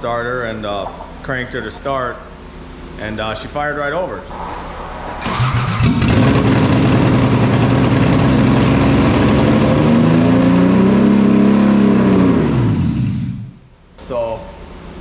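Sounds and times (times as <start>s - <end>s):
car engine revving: 4.3s - 13.6s.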